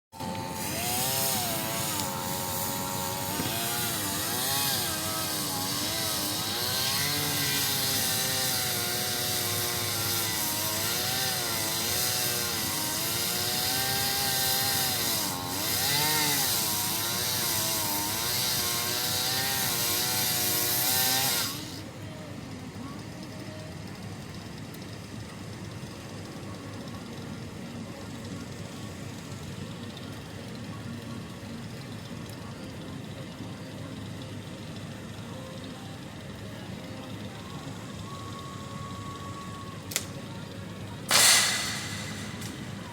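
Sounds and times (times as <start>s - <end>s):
chainsaw cutting wood: 0.2s - 21.8s, 41.1s - 42.9s.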